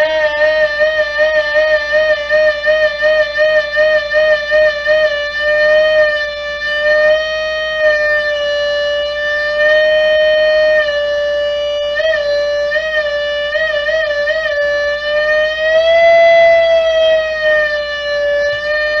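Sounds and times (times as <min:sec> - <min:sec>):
electric guitar sustained high note: 0:00.0 - 0:19.0.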